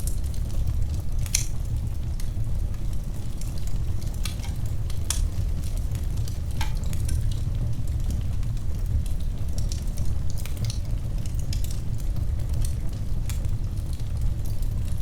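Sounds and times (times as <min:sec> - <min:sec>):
low rumble of flames: 0:00.0 - 0:15.0
wood fire crackling: 0:00.0 - 0:15.0
sharp pops and snaps: 0:01.2 - 0:01.6.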